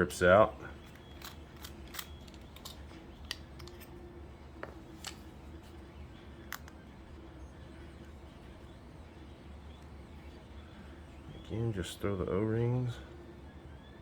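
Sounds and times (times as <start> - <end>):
faint steady hum: 0.0 - 14.0
small parts clicking and tapping: 0.8 - 3.9, 6.4 - 6.8.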